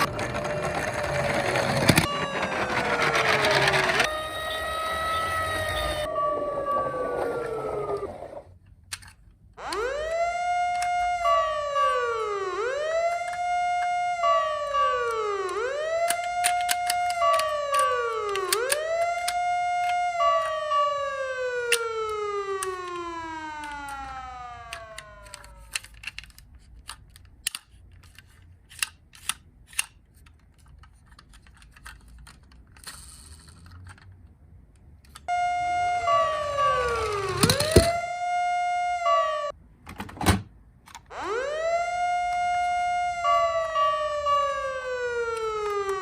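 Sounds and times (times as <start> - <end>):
toy fire engine siren: 0.0 - 8.5, 9.6 - 26.2, 35.2 - 39.6, 41.1 - 46.0.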